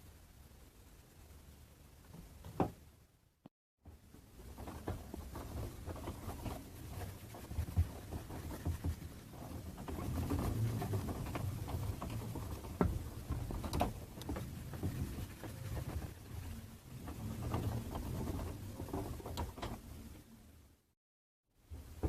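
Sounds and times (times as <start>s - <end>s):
clicks taps and scraping: 3.9s - 20.0s.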